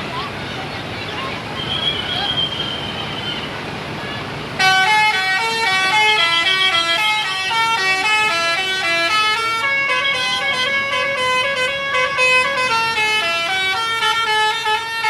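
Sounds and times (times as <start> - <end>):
traffic noise: 0.0 - 15.0
musical bus air horn: 4.6 - 15.0.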